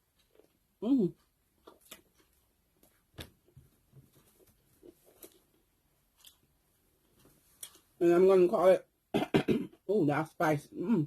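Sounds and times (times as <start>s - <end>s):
chewing and mouth sounds: 0.1s - 2.5s, 4.2s - 7.9s.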